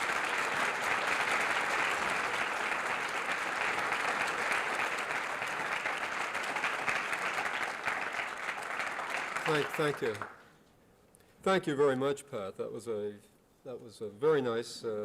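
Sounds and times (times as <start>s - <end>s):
audience applauding: 0.0s - 10.4s.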